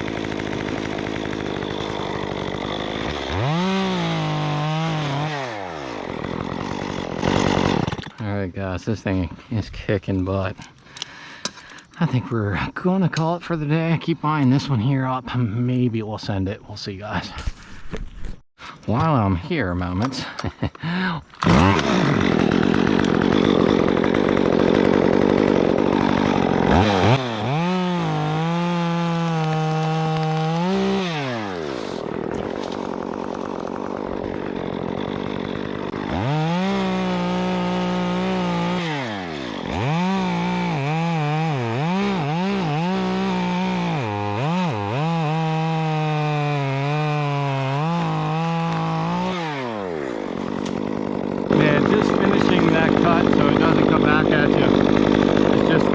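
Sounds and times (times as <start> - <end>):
chainsaw cutting wood: 0.0 - 8.3, 19.9 - 55.9
chainsaw revving: 0.0 - 8.3, 20.0 - 55.9.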